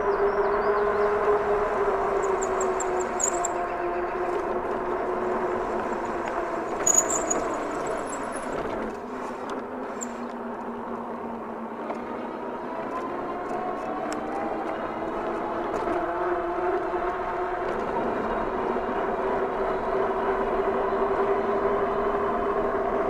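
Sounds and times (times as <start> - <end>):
tyre and wind noise: 4.4 - 10.3
high squeak: 6.8 - 8.6.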